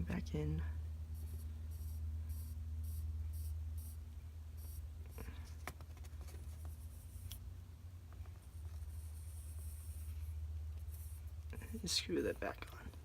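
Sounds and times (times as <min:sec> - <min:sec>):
steady low hum: 0:00.0 - 0:13.0
light scratchy rubbing: 0:08.2 - 0:13.0.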